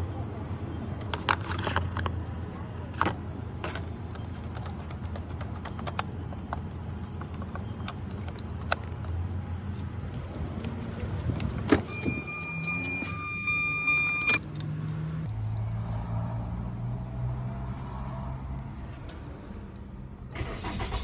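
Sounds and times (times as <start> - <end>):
car starter motor cranking: 20.4 - 21.0.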